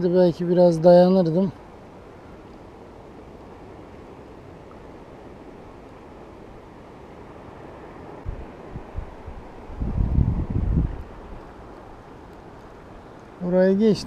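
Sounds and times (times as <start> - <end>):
wind and water at shore: 0.0 - 14.0
wind buffeting microphone: 8.2 - 12.8.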